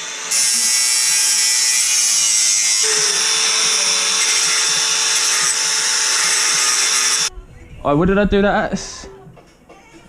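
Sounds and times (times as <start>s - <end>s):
hissing cutting noise: 0.0s - 7.3s.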